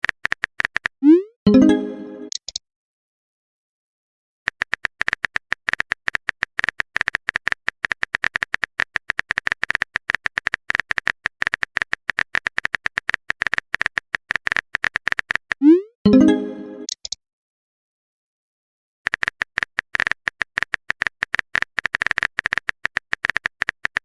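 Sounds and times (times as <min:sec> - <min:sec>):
rapid keyboard clicks: 0:00.0 - 0:01.0, 0:04.5 - 0:15.6, 0:19.1 - 0:24.0.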